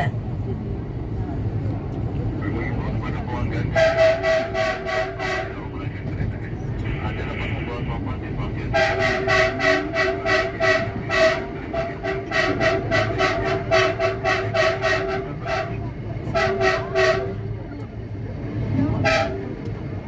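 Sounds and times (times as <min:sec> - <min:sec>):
train rumble: 0:00.0 - 0:20.0
train horn short toots: 0:03.7 - 0:05.7, 0:08.7 - 0:17.8, 0:18.9 - 0:19.8.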